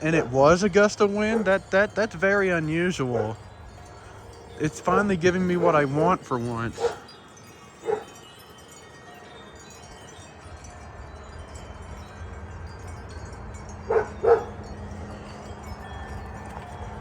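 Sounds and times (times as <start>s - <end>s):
wind chimes ringing: 0.0s - 17.0s
dog barking: 6.8s - 7.1s, 7.8s - 8.1s, 13.9s - 14.6s.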